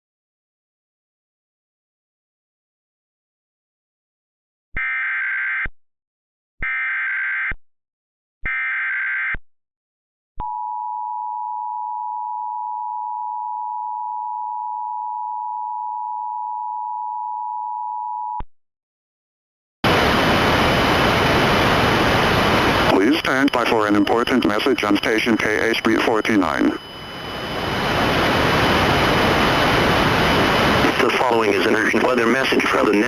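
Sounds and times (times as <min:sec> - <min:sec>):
static hiss: 0:19.9 - 0:33.0
screechy warbling data bursts: 0:22.6 - 0:29.5.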